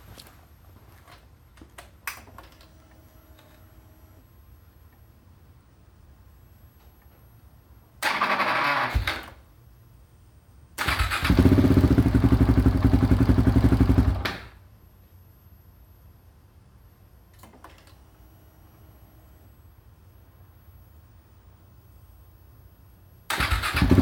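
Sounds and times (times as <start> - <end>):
engine electric starter cranking: 8.0 - 9.4, 10.8 - 12.2, 23.3 - 24.0.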